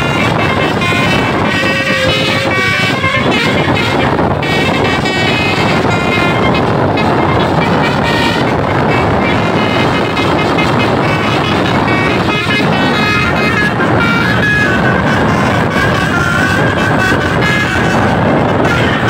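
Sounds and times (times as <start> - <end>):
multi-tone bus horn tune: 0.0 - 19.0
passing bus noise: 0.0 - 19.0.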